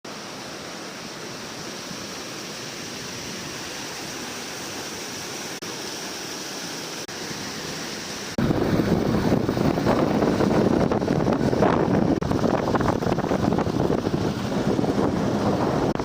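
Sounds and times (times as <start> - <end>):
steady rushing noise: 7.0 - 16.0.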